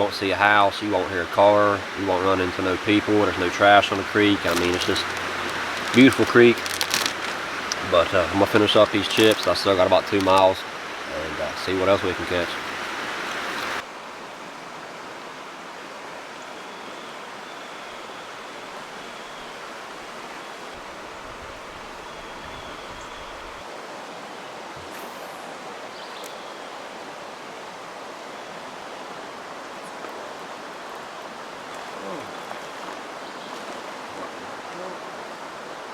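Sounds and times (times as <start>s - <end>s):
water rushing over rocks: 0.0s - 14.2s, 26.8s - 35.9s.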